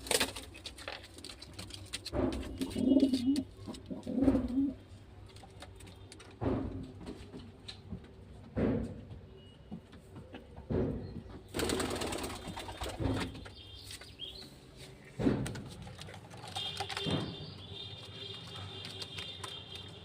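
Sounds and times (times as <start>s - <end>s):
pigeons cooing: 2.6s - 4.9s.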